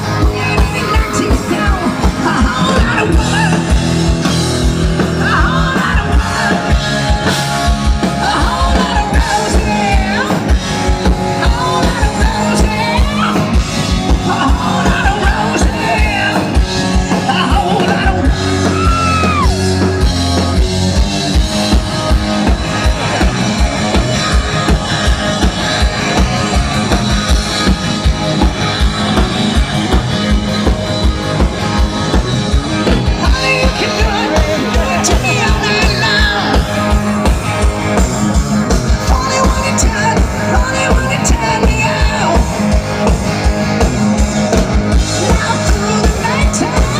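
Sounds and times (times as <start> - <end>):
live rock band playing: 0.0 - 46.9
steady drum beat: 0.0 - 46.9
electric guitar bent notes: 1.8 - 46.9
person singing: 5.1 - 7.2, 8.0 - 10.6, 11.2 - 19.8, 33.0 - 37.0, 39.0 - 42.6, 45.1 - 46.9.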